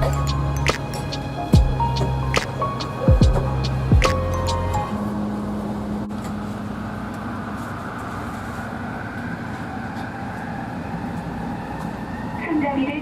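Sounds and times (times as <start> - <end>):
low motor hum: 0.0 - 9.4
rumble of wheels on rail: 0.0 - 13.0.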